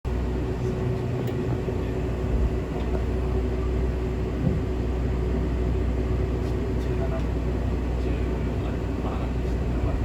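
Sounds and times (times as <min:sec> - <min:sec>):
train rumble and hum: 0:00.1 - 0:10.0.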